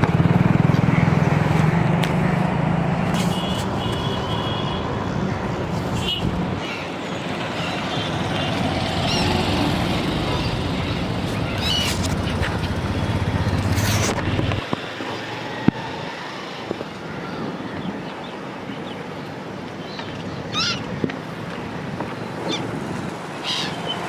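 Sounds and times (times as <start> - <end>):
gulls calling: 3.2 - 13.6, 22.4 - 24.0.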